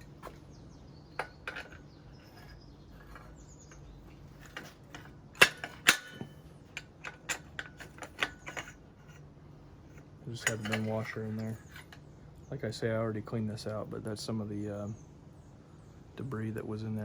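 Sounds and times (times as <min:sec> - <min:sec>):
small metal parts clicking: 0:01.2 - 0:09.2.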